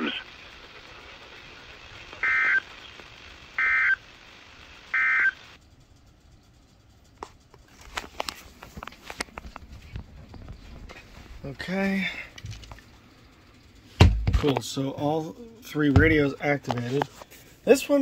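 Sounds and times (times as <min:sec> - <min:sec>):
warbling data tone bursts: 0:00.0 - 0:07.1.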